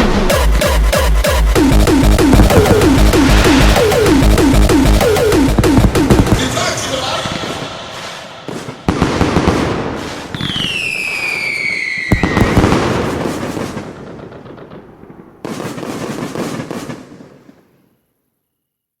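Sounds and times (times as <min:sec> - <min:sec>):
firework sharp bang: 0:01.5 - 0:17.2
fireworks crackling pops: 0:01.6 - 0:18.0
firework whistle sliding down: 0:10.3 - 0:12.7.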